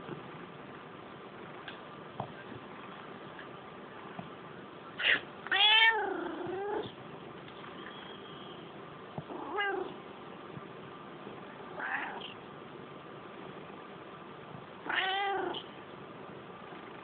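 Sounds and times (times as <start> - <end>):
cat yowling angrily: 5.0 - 6.8, 11.8 - 12.2, 14.9 - 15.6.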